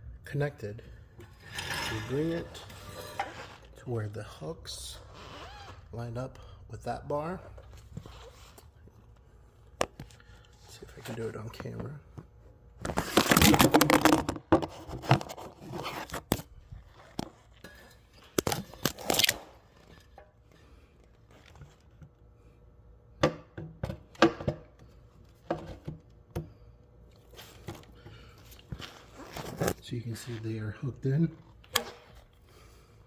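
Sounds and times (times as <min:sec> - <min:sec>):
metal parts clunking and scraping: 0:01.2 - 0:03.6.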